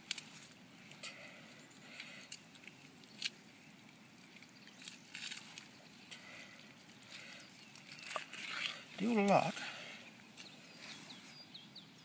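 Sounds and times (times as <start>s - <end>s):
wet squishes of fish gutting: 2.0s - 10.4s.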